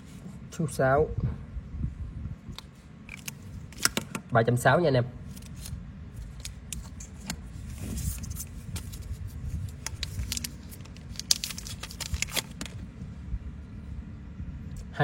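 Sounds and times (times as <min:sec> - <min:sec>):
low steady rumble: 0:00.0 - 0:15.0.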